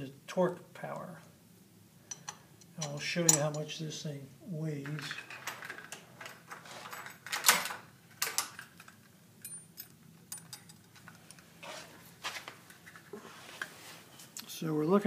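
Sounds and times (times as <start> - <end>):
metal clinks and knocks: 2.1 - 3.7, 4.8 - 11.4.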